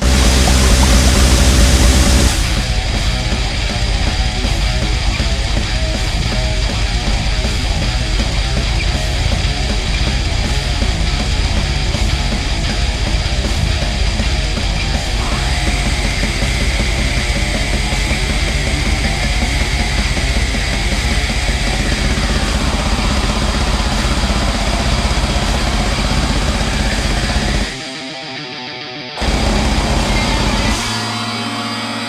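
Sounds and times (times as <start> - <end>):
high held tone: 0.0 - 3.8, 15.2 - 28.2
distorted heavy music: 0.0 - 32.0.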